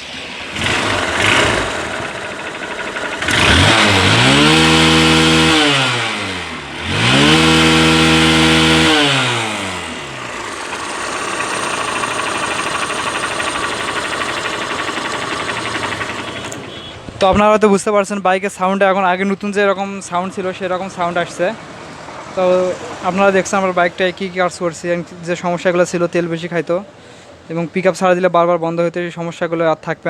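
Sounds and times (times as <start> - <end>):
motorcycle engine idling and revving: 0.0 - 17.5.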